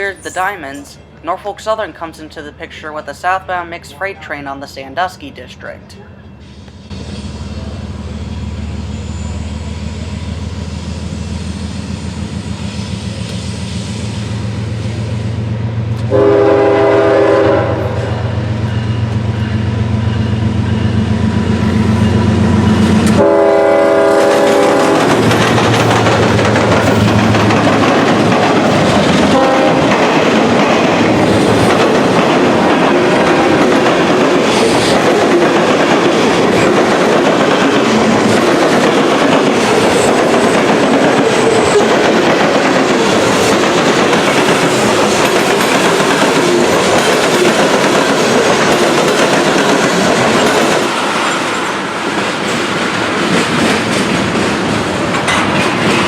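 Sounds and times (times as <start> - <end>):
diesel locomotive engines drumming: 0.0 - 56.0
train horn: 16.1 - 18.3, 23.1 - 25.2, 29.3 - 29.9
freight cars clattering on rails: 24.2 - 56.0.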